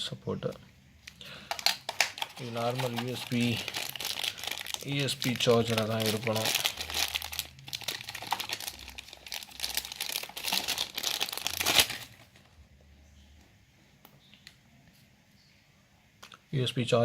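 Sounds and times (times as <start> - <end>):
packaging crinkling and rustling: 0.4 - 12.6.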